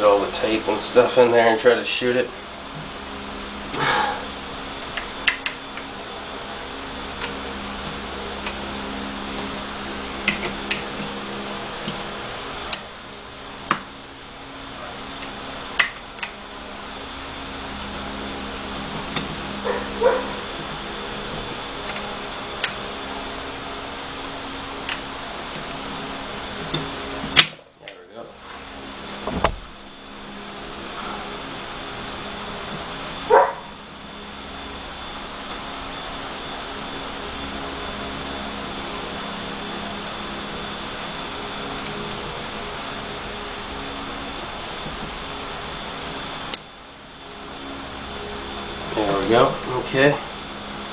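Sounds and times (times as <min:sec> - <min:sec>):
fan-like hum: 0:00.0 - 0:50.9
steady whirring: 0:00.0 - 0:50.9
dog barking: 0:19.6 - 0:20.4, 0:33.3 - 0:33.7.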